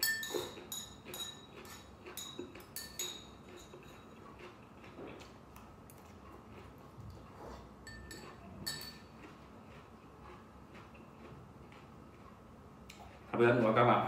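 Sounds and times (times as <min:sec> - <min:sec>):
utensils clinking against a bowl: 0:00.0 - 0:05.2, 0:07.8 - 0:10.8.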